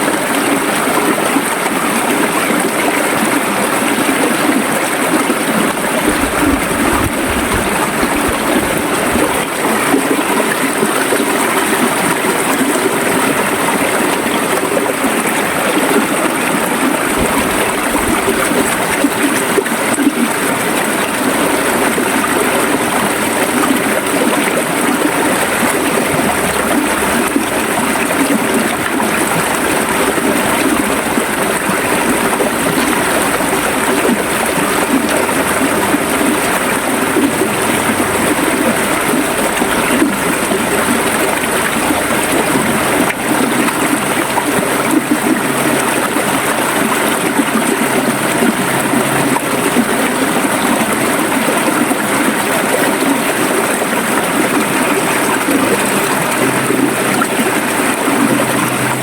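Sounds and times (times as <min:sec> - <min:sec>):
river water running: 0:00.0 - 0:59.0.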